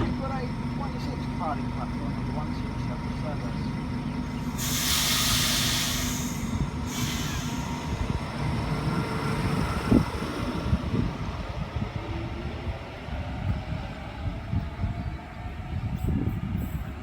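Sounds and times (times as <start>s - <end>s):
electric train rumbling: 0.0s - 17.0s
loud air hiss: 4.4s - 8.2s.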